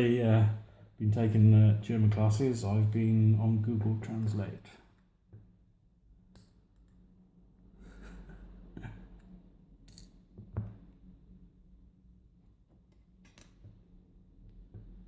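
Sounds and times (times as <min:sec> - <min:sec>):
faint steady hum: 0:00.0 - 0:15.0
lock and metal tools clicking: 0:09.2 - 0:10.2.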